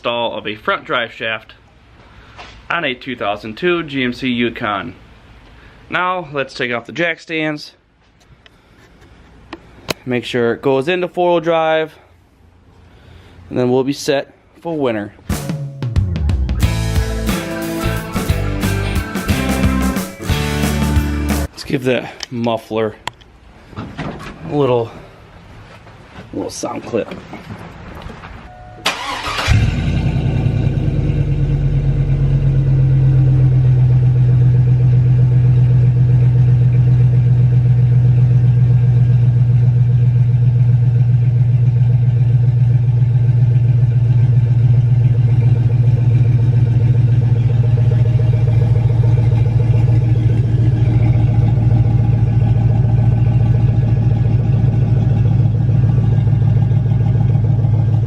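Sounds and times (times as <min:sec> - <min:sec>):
engine starting and idling: 0:28.8 - 0:34.4, 0:39.2 - 0:58.0.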